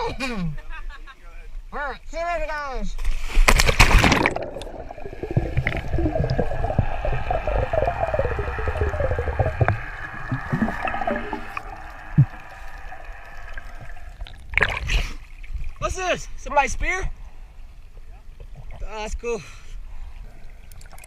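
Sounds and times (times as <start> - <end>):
underwater air bubbles gurgling: 4.0 - 14.9.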